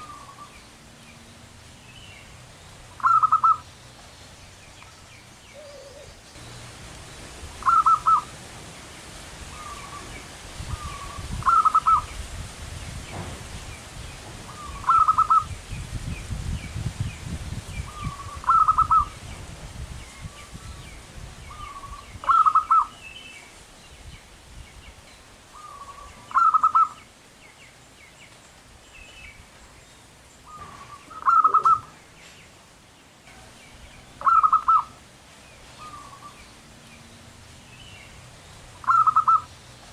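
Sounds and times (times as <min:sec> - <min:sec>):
dove cooing trilled phrase: 0:03.0 - 0:03.6, 0:05.5 - 0:06.2, 0:07.6 - 0:08.3, 0:10.7 - 0:12.1, 0:14.5 - 0:15.5, 0:17.9 - 0:19.1, 0:21.6 - 0:23.0, 0:25.6 - 0:27.0, 0:30.5 - 0:32.0, 0:34.2 - 0:35.0, 0:38.8 - 0:39.5.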